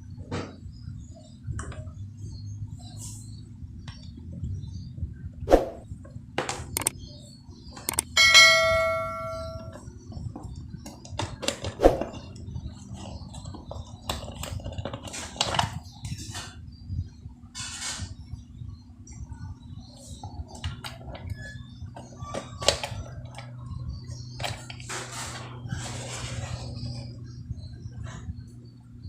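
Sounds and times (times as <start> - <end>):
low steady hum: 0.0 - 29.0
ringing metallic strike: 8.1 - 9.8.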